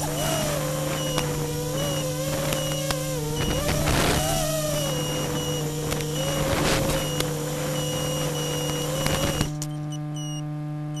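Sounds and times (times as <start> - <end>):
crackling video link static: 0.0 - 9.8
electrical hum: 0.0 - 11.0
quadcopter motor whine: 0.0 - 11.0
clicks: 0.1 - 10.4.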